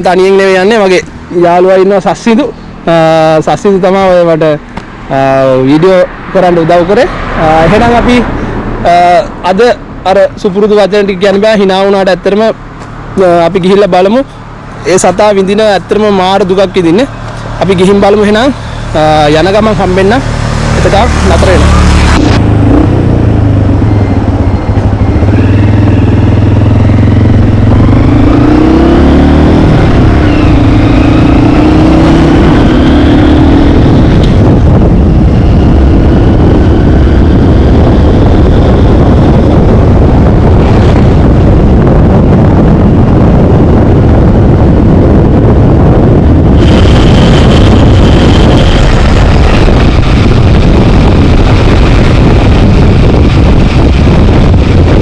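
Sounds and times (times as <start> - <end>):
road and wind noise: 0.0 - 55.0
vehicle engine accelerating: 0.2 - 9.4, 14.4 - 55.0.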